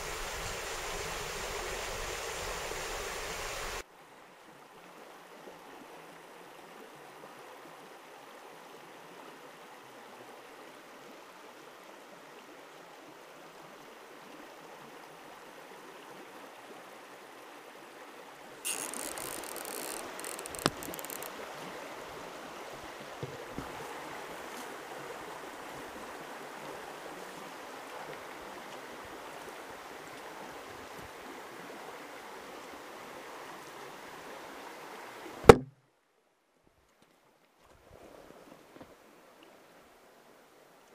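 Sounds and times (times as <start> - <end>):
stream water running: 0.0 - 35.8, 36.9 - 40.9
sharp knocks: 35.5 - 35.8.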